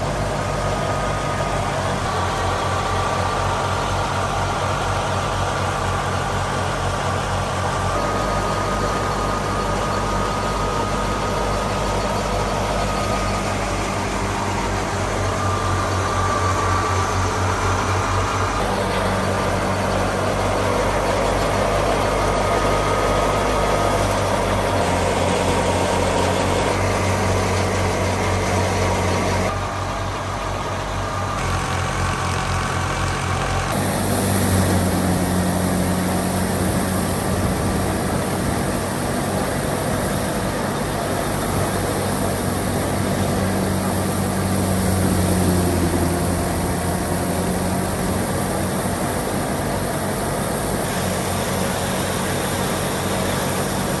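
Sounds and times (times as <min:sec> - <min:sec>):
tractor diesel engine running: 0:00.0 - 0:54.0
wheat thresher: 0:00.0 - 0:54.0.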